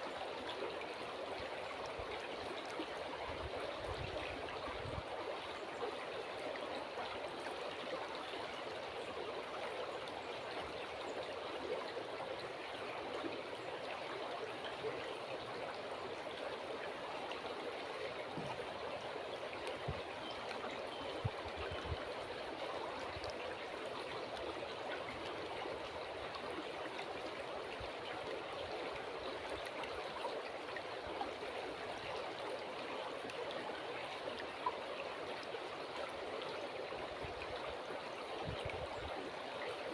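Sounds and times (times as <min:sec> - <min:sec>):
river water babbling: 0:00.0 - 0:39.9
faint knocks and splashes: 0:18.2 - 0:18.8.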